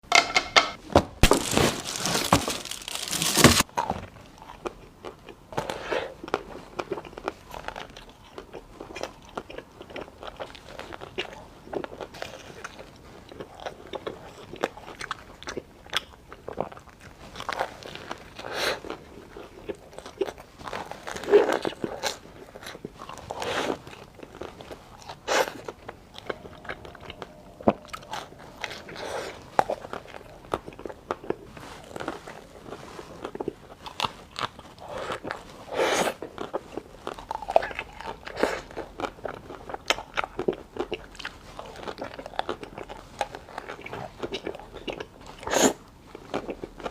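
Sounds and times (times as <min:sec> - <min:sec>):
crisp crunching bites: 0:01.2 - 0:03.7
quiet chewing: 0:02.6 - 0:46.9.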